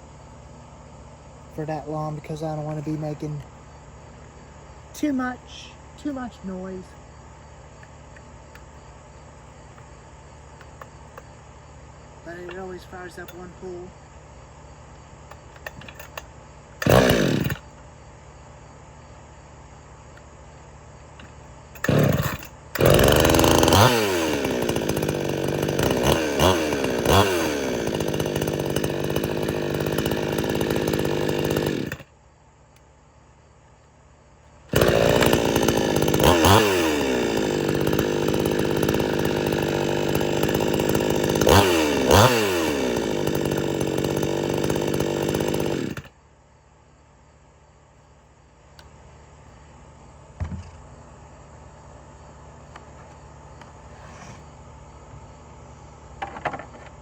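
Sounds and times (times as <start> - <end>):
chainsaw starting and revving: 1.6 - 3.5, 15.3 - 17.8, 21.2 - 32.1, 34.7 - 46.1.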